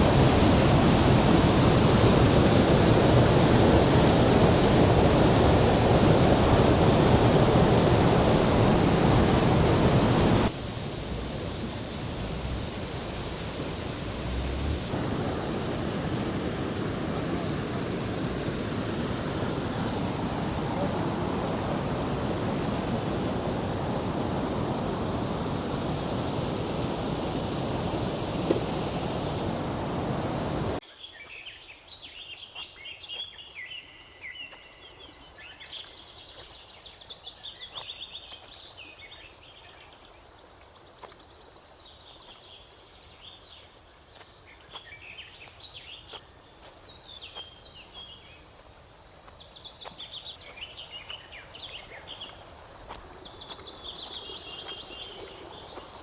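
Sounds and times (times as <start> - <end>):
waterfall rushing: 0.0 - 30.8
faint insect hum: 0.0 - 31.6, 32.2 - 56.0.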